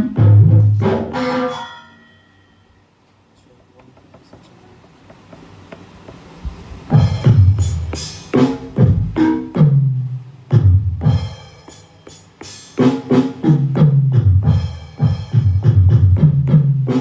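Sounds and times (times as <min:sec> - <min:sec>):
electronic tom drum hits: 0:00.0 - 0:01.7, 0:06.4 - 0:17.0.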